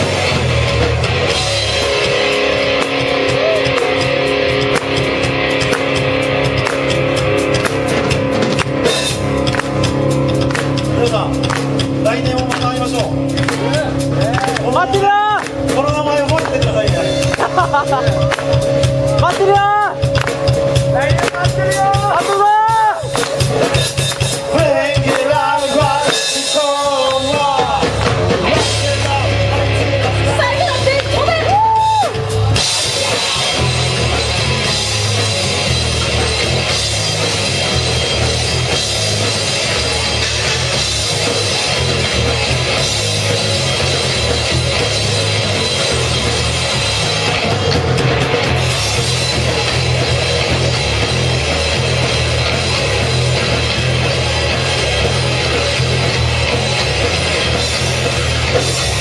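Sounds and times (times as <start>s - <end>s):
drums: 0.0s - 59.0s
electric guitar: 0.0s - 59.0s
live rock band playing: 0.0s - 59.0s
person singing: 24.4s - 30.3s.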